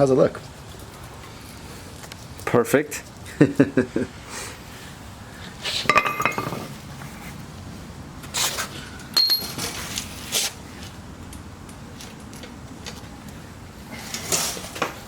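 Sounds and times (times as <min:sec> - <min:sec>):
metal tools clinking: 0:05.9 - 0:06.7, 0:09.1 - 0:09.8.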